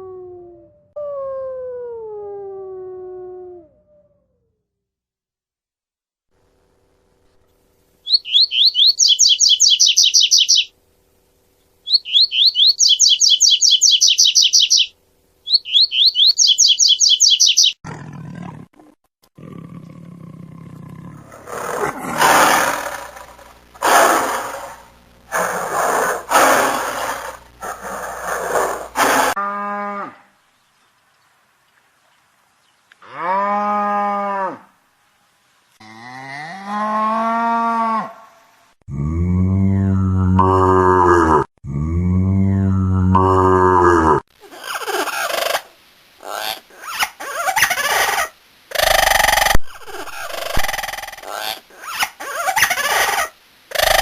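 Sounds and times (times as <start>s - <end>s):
low falling animal call: 0.0s - 4.6s, 15.5s - 30.3s, 35.8s - 51.6s, 52.2s - 54.0s
big cat roaring: 17.8s - 29.4s, 38.9s - 44.2s.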